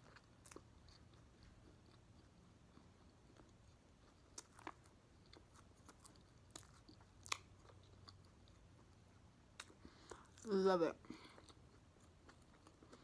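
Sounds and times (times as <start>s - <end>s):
chewing food: 0.0s - 13.0s.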